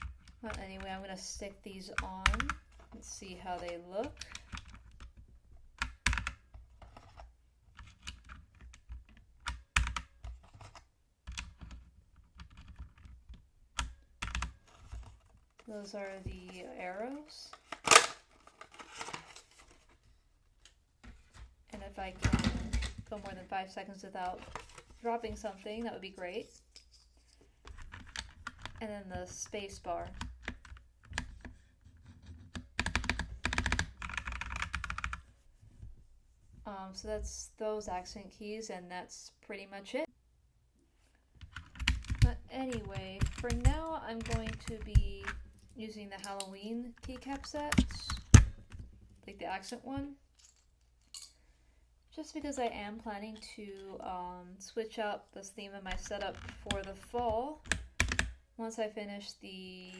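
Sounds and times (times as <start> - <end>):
mechanical keyboard typing: 32.8 - 35.2, 41.6 - 45.3.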